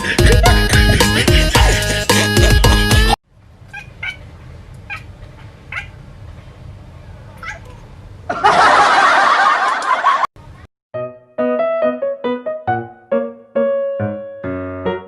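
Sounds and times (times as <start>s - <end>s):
cat caterwauling: 7.3s - 7.9s
cat meowing: 7.3s - 7.9s.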